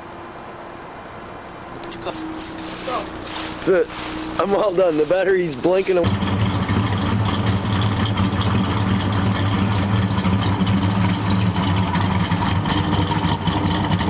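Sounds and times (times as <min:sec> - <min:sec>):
steady machine hum: 0:00.0 - 0:14.0
hiss: 0:01.9 - 0:05.5.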